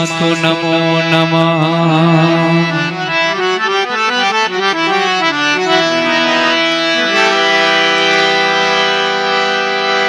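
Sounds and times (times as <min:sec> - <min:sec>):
harmonium playing chord: 0:00.0 - 0:10.0.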